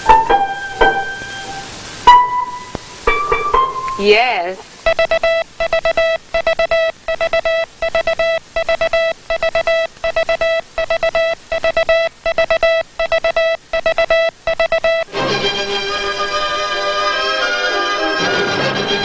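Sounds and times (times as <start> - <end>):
morse code beeping: 4.8 - 15.1
orchestral music: 15.1 - 19.0.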